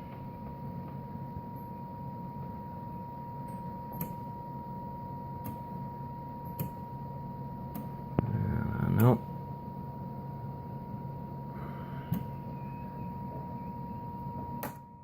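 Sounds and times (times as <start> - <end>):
amplifier humming: 7.8 - 14.5.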